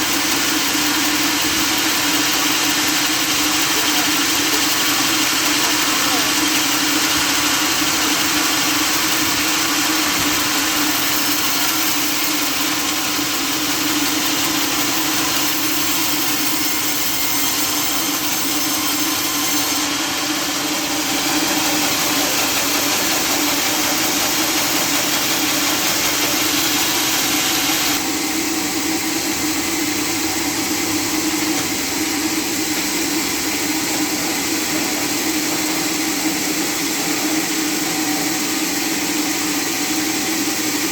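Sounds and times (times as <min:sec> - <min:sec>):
machinery hiss: 0:19.8 - 0:28.0.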